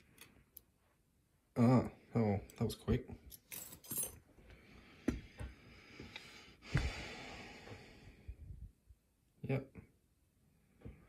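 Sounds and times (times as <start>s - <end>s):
lock and tools clicking: 0.0s - 0.7s.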